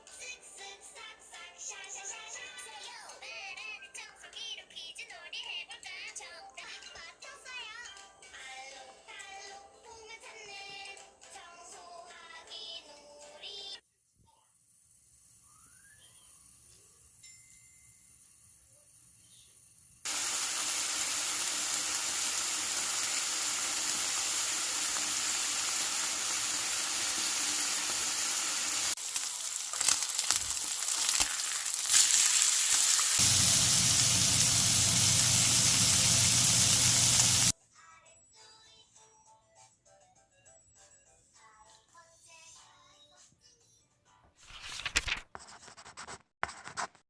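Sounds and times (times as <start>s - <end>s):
food sizzling in a pan: 14.4s - 37.6s.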